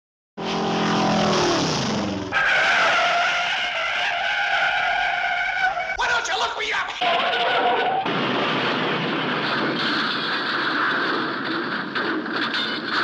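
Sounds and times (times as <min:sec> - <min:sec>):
cartoon tire screech: 0:02.3 - 0:08.1.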